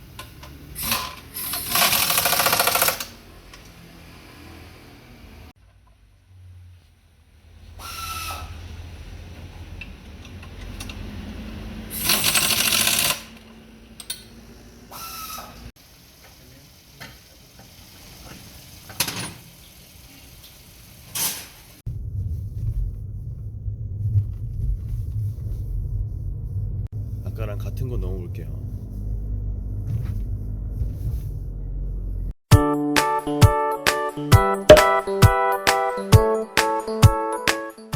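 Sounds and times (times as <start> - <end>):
car engine running rumble: 21.9 - 32.5.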